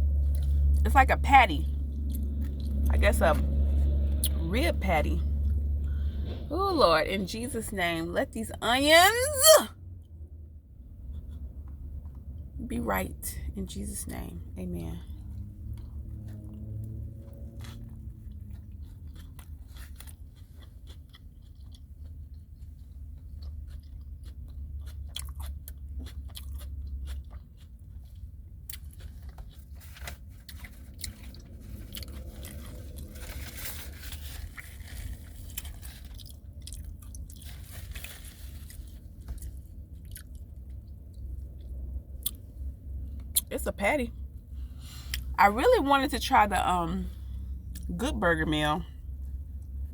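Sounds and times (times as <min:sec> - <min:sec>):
person chewing sandwich: 0:01.8 - 0:02.9, 0:15.4 - 0:42.6.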